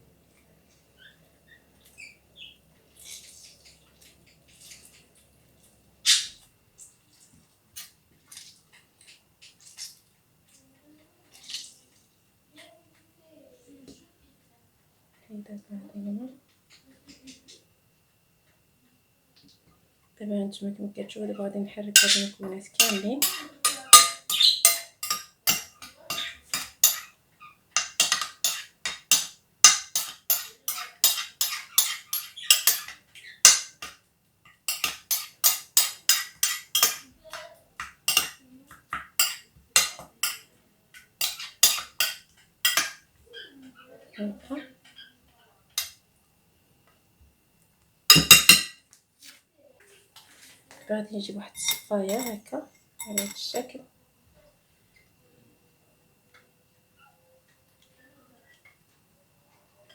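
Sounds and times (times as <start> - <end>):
spoon stirring wet mix in bowl: 2.8 - 12.1, 21.7 - 46.0, 48.1 - 53.7
spoon clinking against bowl: 22.0 - 27.2, 27.8 - 43.0, 45.7 - 46.0, 48.1 - 48.8, 51.5 - 53.5.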